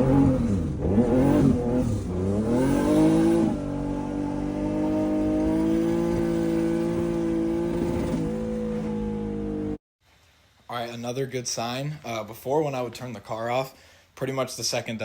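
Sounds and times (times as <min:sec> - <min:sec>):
turbocharged car engine revving: 0:00.0 - 0:09.8.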